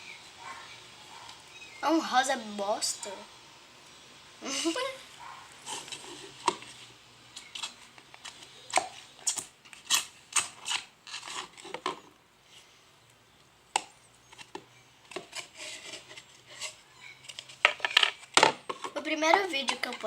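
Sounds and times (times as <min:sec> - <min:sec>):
slime scraping: 0:05.2 - 0:12.1, 0:15.1 - 0:20.0.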